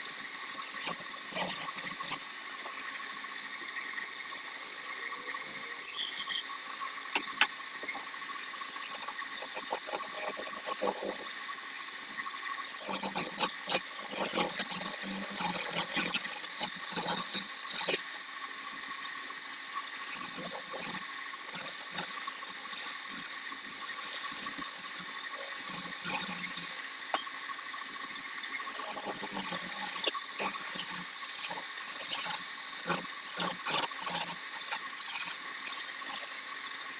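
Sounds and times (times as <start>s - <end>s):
wood lathe whining: 0.0s - 11.3s, 20.2s - 27.2s, 28.6s - 36.5s
turning tool scraping wood: 0.2s - 2.2s, 4.0s - 6.5s, 8.7s - 11.4s, 12.7s - 18.2s, 20.2s - 27.3s, 28.7s - 36.5s.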